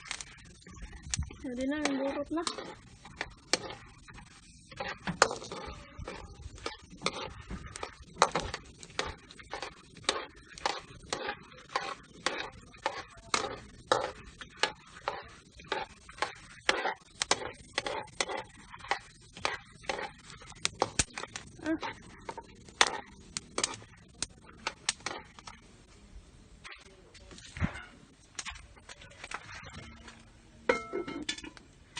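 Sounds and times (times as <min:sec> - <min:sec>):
popcorn being chewed: 0:04.7 - 0:25.6.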